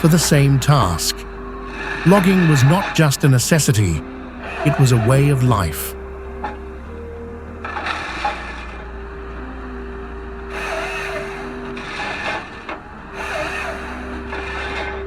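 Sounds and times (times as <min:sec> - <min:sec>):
cutting tool grinding wood: 0:00.0 - 0:15.0
heavy machine engine running: 0:00.0 - 0:15.0.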